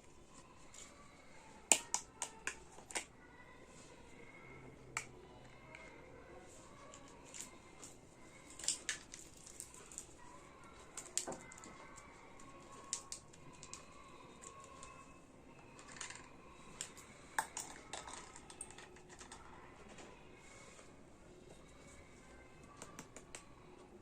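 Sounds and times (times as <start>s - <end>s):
plastic toy pieces clicking: 1.7s - 3.1s, 8.5s - 10.1s, 12.4s - 15.0s, 15.7s - 19.5s.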